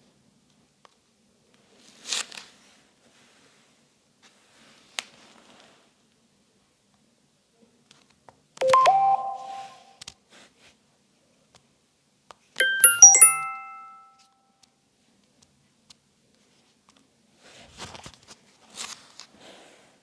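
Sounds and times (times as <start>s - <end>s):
phone chime notes: 8.6s - 9.9s, 12.6s - 14.1s.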